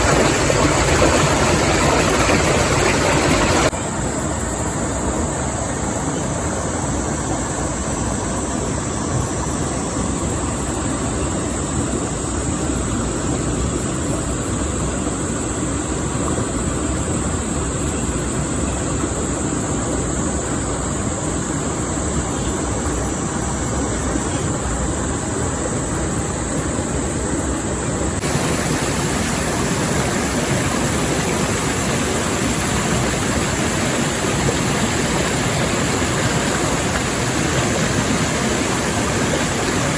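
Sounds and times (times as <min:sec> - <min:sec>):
river water rushing: 0:00.0 - 0:04.1, 0:28.2 - 0:39.9.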